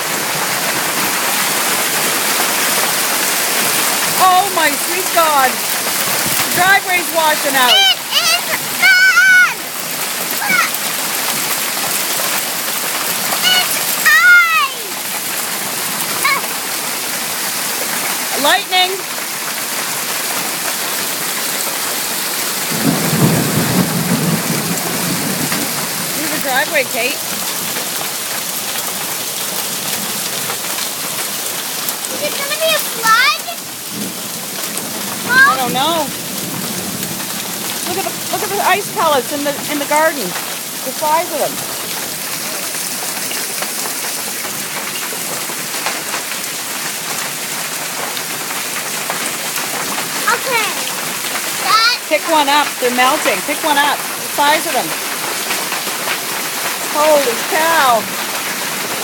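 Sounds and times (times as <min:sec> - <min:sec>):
thunder rumbling: 0:00.0 - 0:14.0, 0:22.0 - 0:27.7, 0:33.0 - 0:43.2
torrential rain and hail: 0:00.0 - 0:59.0.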